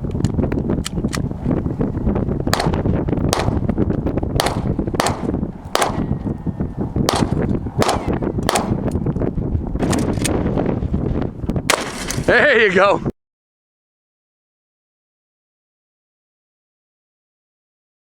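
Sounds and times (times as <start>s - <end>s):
steady low rumble: 0.0s - 12.4s
gunshots: 2.5s - 3.6s, 4.4s - 6.1s, 7.1s - 8.8s.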